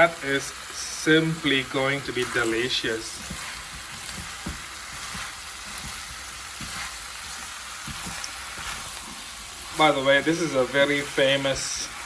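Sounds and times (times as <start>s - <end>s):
food sizzling in a pan: 0.0s - 12.0s
utensil knocking while stirring: 2.2s - 8.9s.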